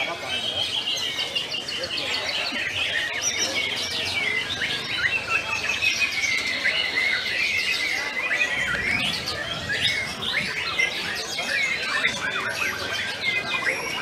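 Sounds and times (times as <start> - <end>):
songbirds chorus: 0.0 - 14.0.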